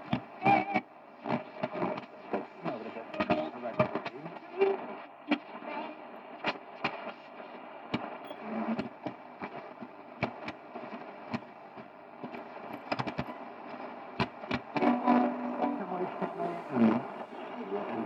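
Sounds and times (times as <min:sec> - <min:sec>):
radio static hiss: 0:00.0 - 0:18.0
sharp static crackles: 0:00.0 - 0:18.0.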